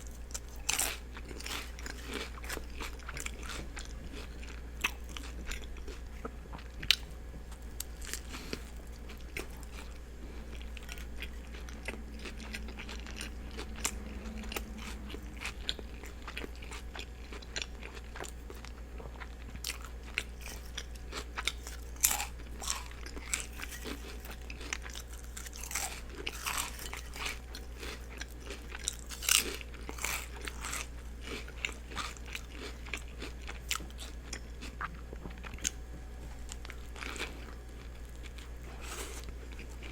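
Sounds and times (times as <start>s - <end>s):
low hum: 0.0s - 20.7s
chewing and biting sandwich: 0.0s - 39.9s.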